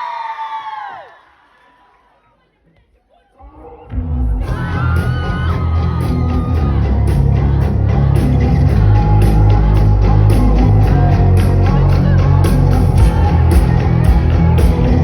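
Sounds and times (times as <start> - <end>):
crowd shouting along: 4.4 - 9.7
rock band playing live: 4.5 - 15.0.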